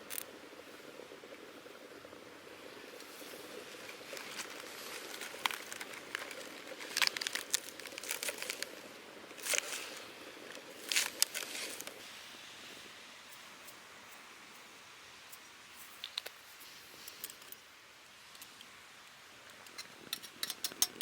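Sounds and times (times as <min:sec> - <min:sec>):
sharp crackles: 0:00.0 - 0:12.0
faint steady hiss: 0:00.0 - 0:21.0
packaging crinkling and rustling: 0:03.9 - 0:12.0.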